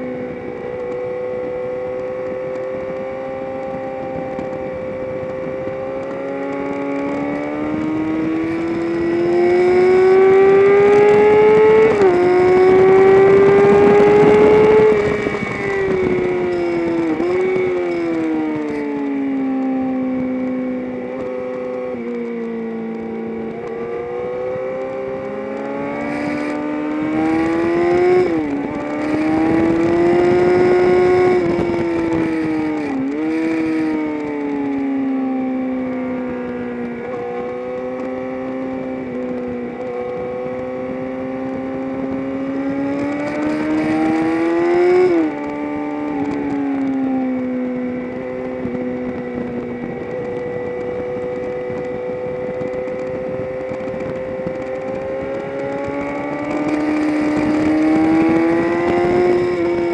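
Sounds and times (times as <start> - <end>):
race car engine revving: 5.7 - 18.8, 23.0 - 34.5, 36.6 - 47.0, 47.7 - 59.9.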